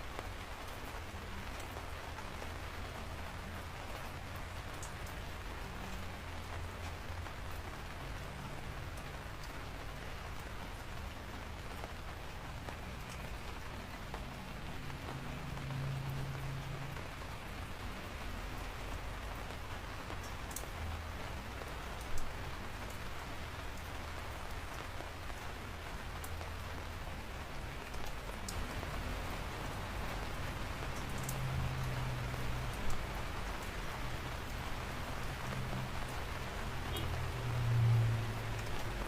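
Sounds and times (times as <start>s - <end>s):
steady rain falling: 0.0s - 39.0s.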